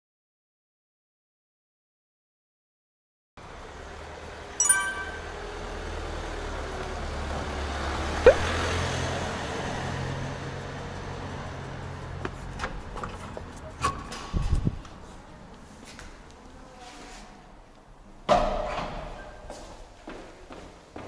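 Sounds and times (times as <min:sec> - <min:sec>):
road traffic rumble: 0:03.4 - 0:04.6, 0:05.3 - 0:16.6
ringing clink: 0:04.6 - 0:05.5.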